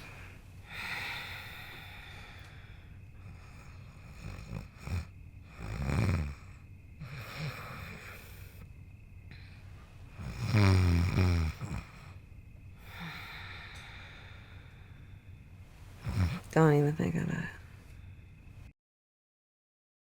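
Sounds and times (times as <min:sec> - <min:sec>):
person snoring: 0:00.0 - 0:08.6, 0:10.2 - 0:12.2, 0:12.8 - 0:14.7, 0:16.0 - 0:16.6.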